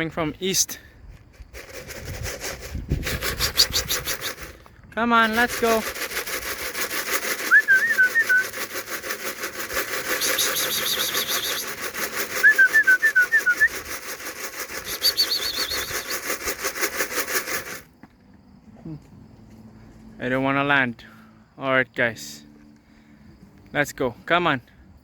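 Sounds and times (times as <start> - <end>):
grain rattling in a can: 1.4 - 18.0
short warbling whistles: 3.3 - 4.5, 7.3 - 8.7, 10.0 - 13.9, 14.7 - 16.4.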